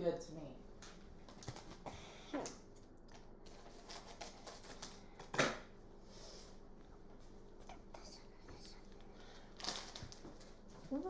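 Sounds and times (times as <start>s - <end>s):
plastic packaging crackling: 9.6s - 10.6s.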